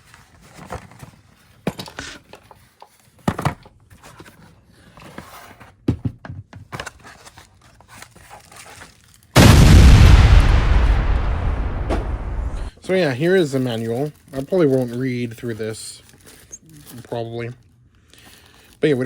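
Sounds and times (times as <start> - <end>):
packaging rustling and crinkling: 6.8 - 9.4, 13.5 - 17.6
loud burst of noise: 9.4 - 12.8.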